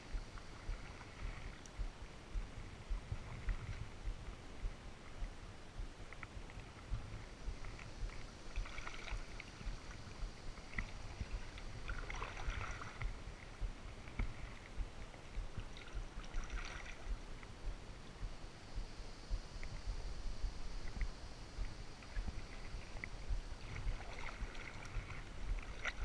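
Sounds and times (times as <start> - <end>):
low rumble: 0.0 - 26.0
kayak paddle splashing in water: 6.4 - 17.1, 22.0 - 26.0.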